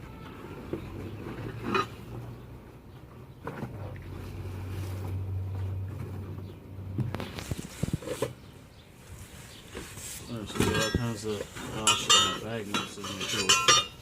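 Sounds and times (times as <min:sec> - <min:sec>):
clicks and knocks of metal brackets: 0:11.8 - 0:14.0.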